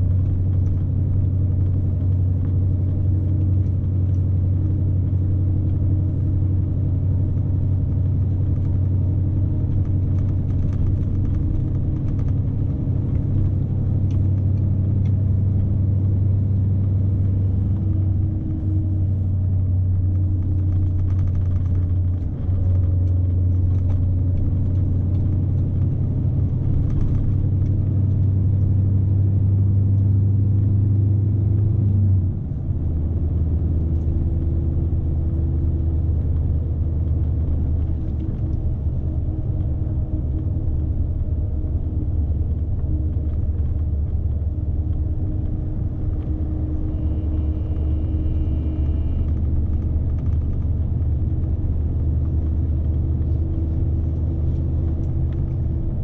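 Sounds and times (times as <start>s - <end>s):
truck diesel engine droning: 0.0s - 56.0s.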